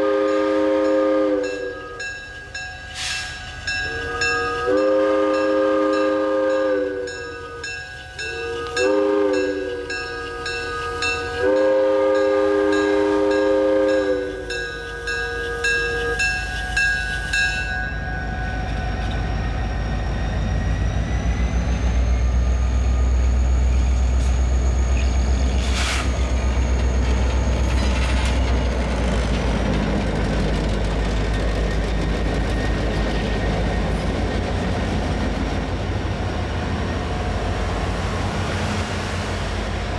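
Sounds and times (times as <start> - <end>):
locomotive air whistle blasts: 0.0 - 2.1, 2.9 - 19.0, 24.0 - 27.7
diesel locomotive engine rumble: 0.0 - 39.9.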